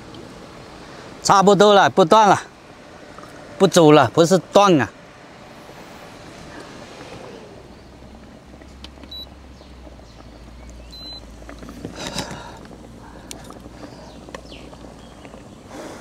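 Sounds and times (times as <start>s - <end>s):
low steady hum: 0.0s - 16.0s
light clicks and rustles: 8.2s - 16.0s.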